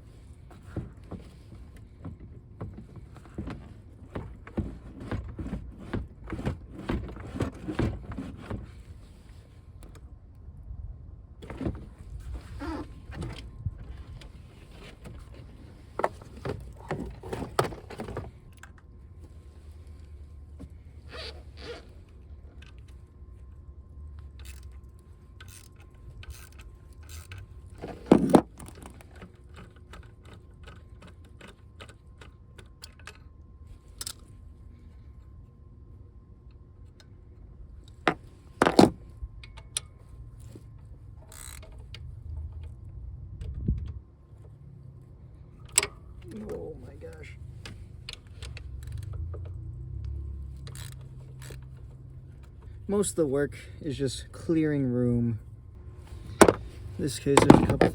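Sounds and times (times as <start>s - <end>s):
hand tools clicking and scraping: 56.1s - 57.9s.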